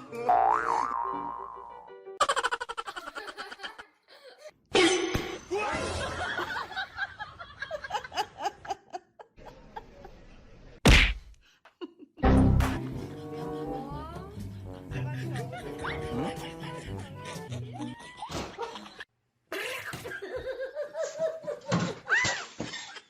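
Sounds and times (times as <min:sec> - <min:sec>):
people laughing: 0:02.2 - 0:04.4, 0:05.7 - 0:10.4, 0:12.9 - 0:23.0.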